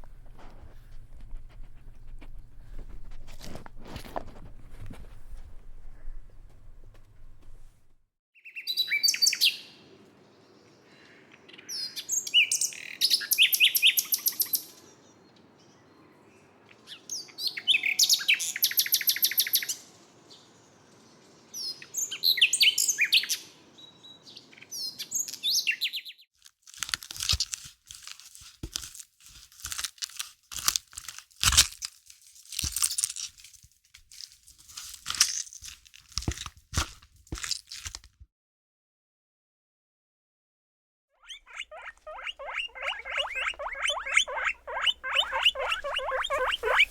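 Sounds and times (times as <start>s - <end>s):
small bird chirping and trilling: 16.9s - 19.8s, 41.2s - 46.9s
crackling crunching clicks: 26.4s - 38.2s, 42.6s - 46.9s.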